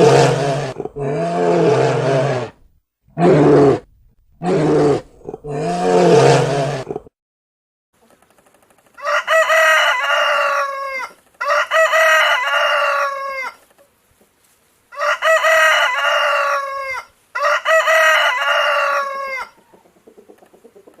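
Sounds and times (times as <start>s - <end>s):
rooster crowing: 9.0s - 13.6s, 14.9s - 19.6s.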